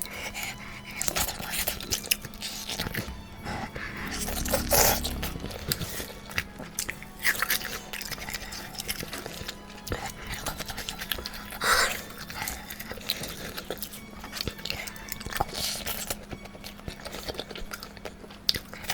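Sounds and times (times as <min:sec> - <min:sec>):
noisy burst: 0:02.8 - 0:06.6.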